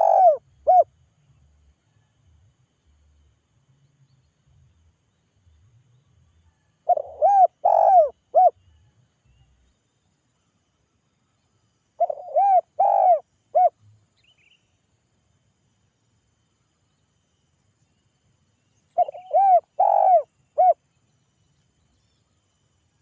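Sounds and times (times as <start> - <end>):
dove cooing: 0.0 - 0.9, 6.8 - 8.6, 12.0 - 13.7, 19.0 - 20.8.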